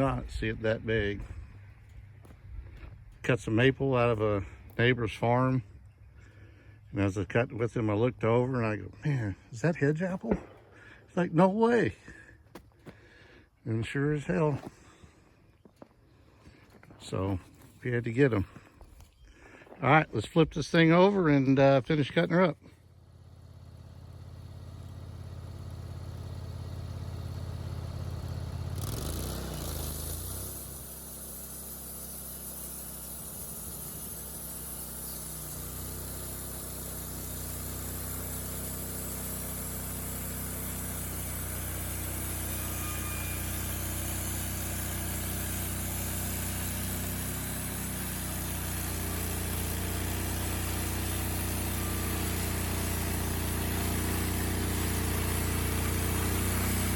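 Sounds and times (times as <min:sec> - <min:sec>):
engine running: 0:00.0 - 0:56.9.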